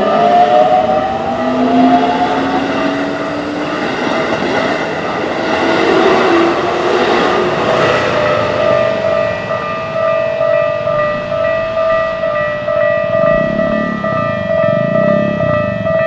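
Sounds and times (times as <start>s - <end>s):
crossing warning bell: 0.0s - 16.0s
train motor whine: 0.0s - 16.0s
wheel and rail noise: 0.0s - 16.0s.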